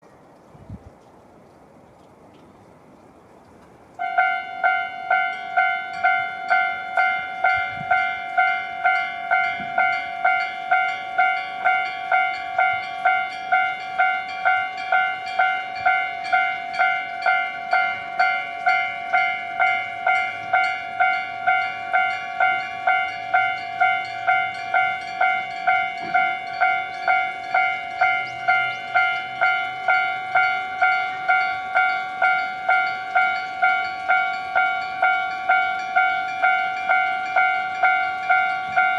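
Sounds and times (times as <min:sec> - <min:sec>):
level crossing warning bell: 0:04.0 - 0:38.9.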